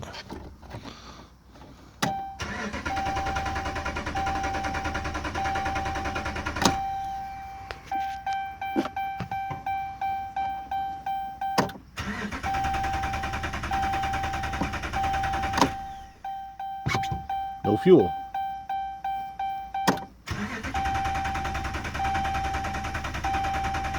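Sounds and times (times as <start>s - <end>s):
engine cranking without starting: 2.0s - 8.0s, 11.6s - 16.3s, 19.8s - 23.9s
high beeping tone: 2.1s - 11.7s, 12.4s - 22.6s
clicks: 19.3s - 20.1s.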